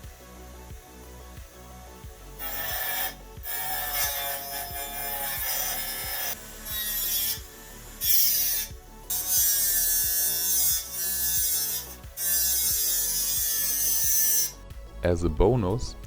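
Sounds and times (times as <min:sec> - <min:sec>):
sanding disc grinding: 0:02.4 - 0:14.4.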